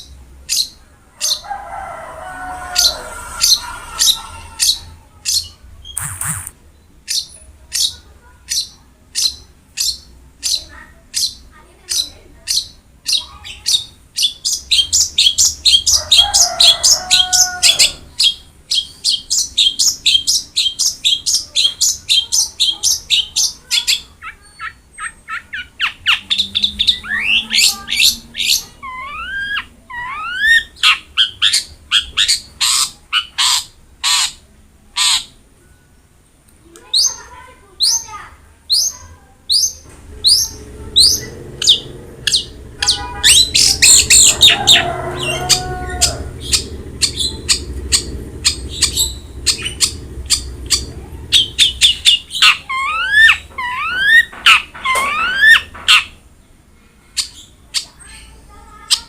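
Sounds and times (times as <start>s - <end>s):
low harsh bird call: 1.3s - 6.7s, 40.2s - 56.0s
bird singing: 2.4s - 34.3s, 38.7s - 56.2s.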